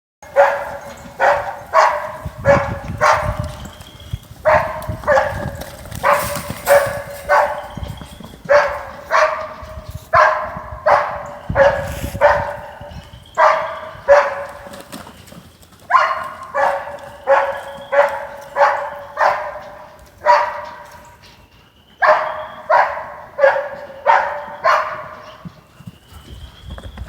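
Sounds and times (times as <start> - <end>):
dog barking: 0.2 - 3.6, 4.4 - 7.8, 8.5 - 14.7, 15.9 - 21.0, 22.0 - 25.4.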